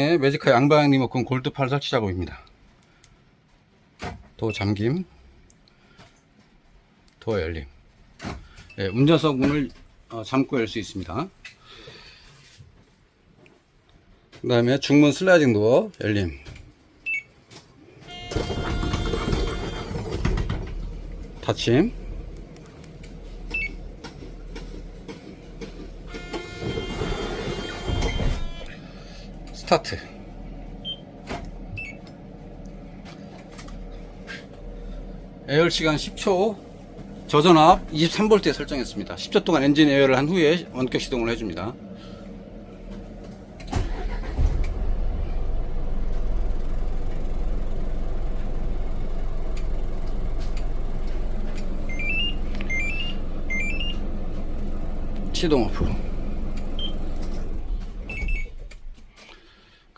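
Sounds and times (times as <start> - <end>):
diesel engine cranking and idling: 17.8 - 59.8
door motor whirring: 18.1 - 21.4, 22.0 - 29.6, 49.5 - 59.0
rising beep tune: 51.9 - 54.0.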